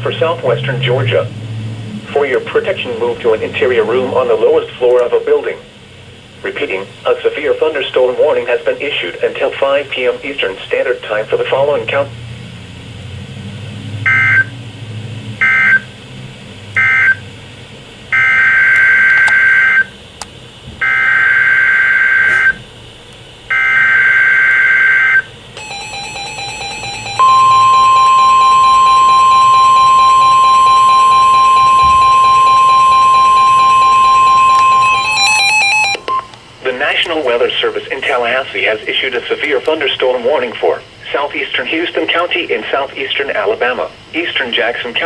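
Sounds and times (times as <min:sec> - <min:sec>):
steady warning alarm tone: 0:14.0 - 0:40.9
buzzy data bursts: 0:23.5 - 0:36.0.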